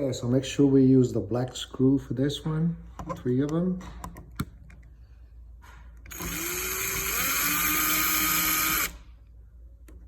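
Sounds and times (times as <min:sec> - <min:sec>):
power drill whining: 0:06.1 - 0:09.0.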